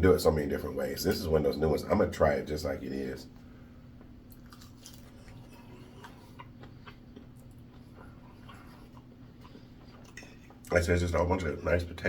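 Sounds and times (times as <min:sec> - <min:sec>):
person chewing food: 0:04.2 - 0:10.8.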